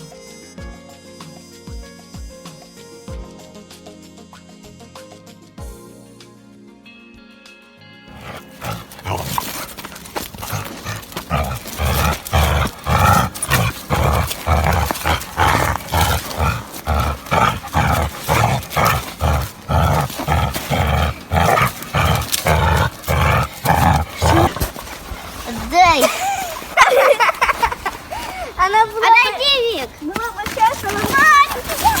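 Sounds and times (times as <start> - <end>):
dog barking: 8.2 - 24.8.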